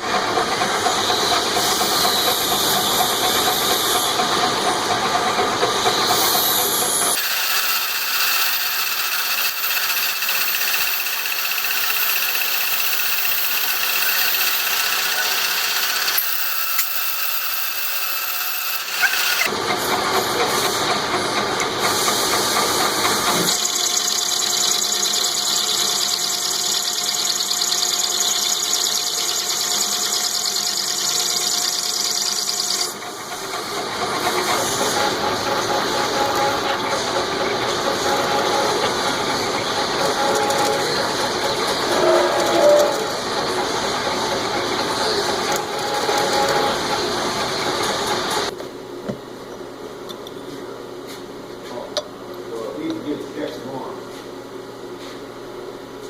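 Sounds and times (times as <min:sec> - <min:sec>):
machine tools cutting metal: 0:06.1 - 0:19.6, 0:22.4 - 0:48.5.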